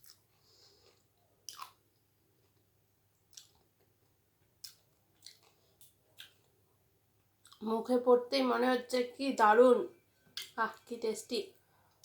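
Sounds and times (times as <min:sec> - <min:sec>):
person chewing: 0:00.0 - 0:01.8, 0:03.3 - 0:03.9, 0:04.6 - 0:06.5.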